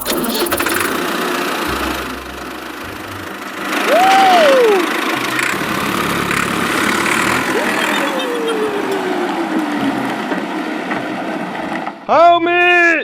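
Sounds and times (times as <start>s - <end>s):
pitched sound rising and sliding down: 0.0s - 9.9s
vehicle engine running: 0.0s - 10.6s.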